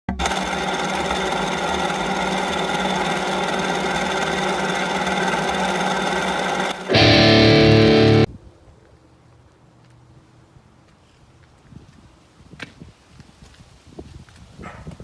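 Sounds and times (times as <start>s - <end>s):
engine idling: 0.1s - 8.3s.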